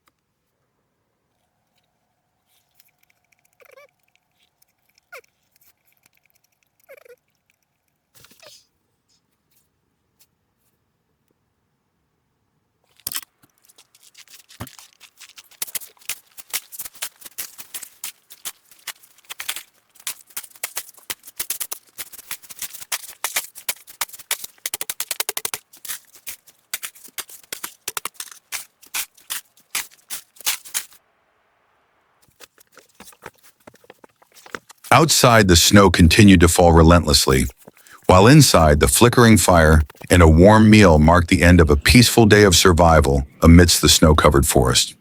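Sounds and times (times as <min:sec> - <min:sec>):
wood fire crackling: 0:13.1 - 0:31.0, 0:32.2 - 0:44.8.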